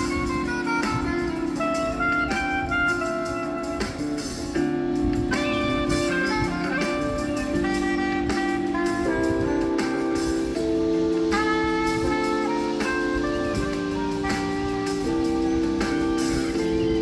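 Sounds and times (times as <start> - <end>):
mellow jazz guitar music: 0.0 - 17.0.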